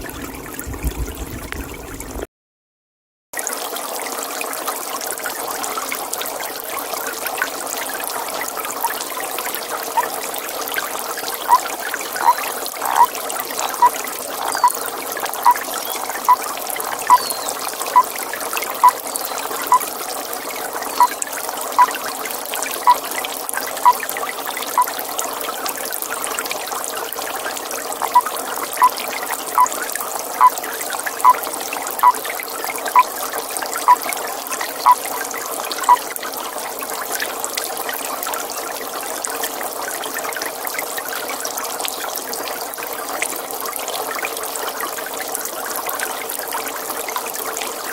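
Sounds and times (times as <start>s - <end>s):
trickling water: 0.0s - 2.3s, 3.4s - 47.9s
toad calling: 11.4s - 14.8s, 15.4s - 16.4s, 17.0s - 18.2s, 18.8s - 19.8s, 21.0s - 21.2s, 28.0s - 29.0s, 32.0s - 32.2s, 32.9s - 33.1s, 33.8s - 34.0s, 35.8s - 36.0s.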